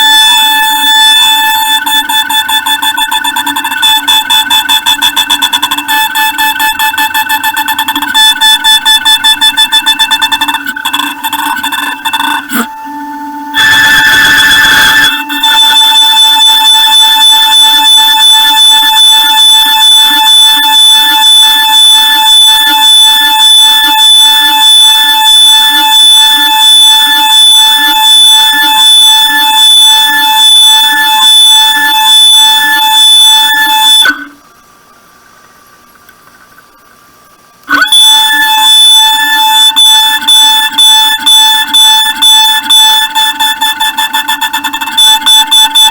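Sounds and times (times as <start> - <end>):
milling cutter squealing: 0.0 - 12.8.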